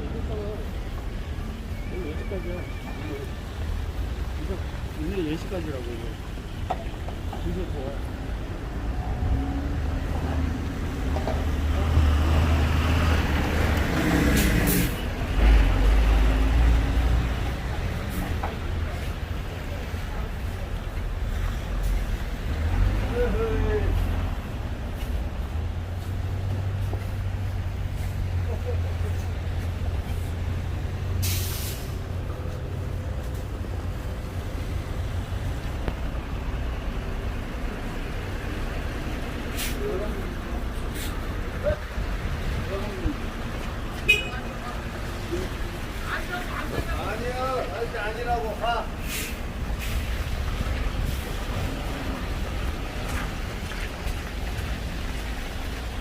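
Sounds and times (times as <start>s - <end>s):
heavy vehicle engine rumble: 0.0s - 56.0s
loud air hiss: 31.2s - 32.0s
short hiss: 31.2s - 32.0s, 39.5s - 39.8s, 49.0s - 50.1s.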